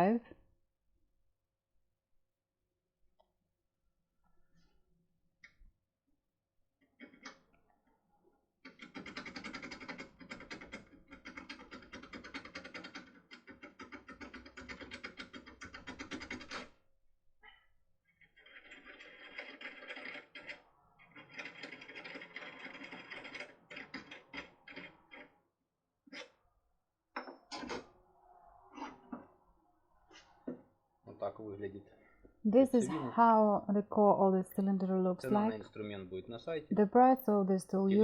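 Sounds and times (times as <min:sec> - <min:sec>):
lockpick rattling in lock: 0:08.6 - 0:16.6, 0:18.4 - 0:25.3.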